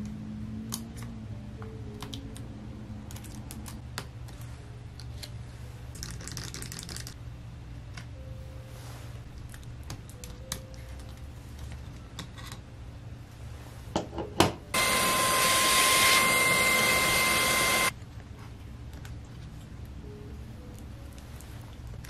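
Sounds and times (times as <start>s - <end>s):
small electric motor tool whine: 14.8s - 17.9s.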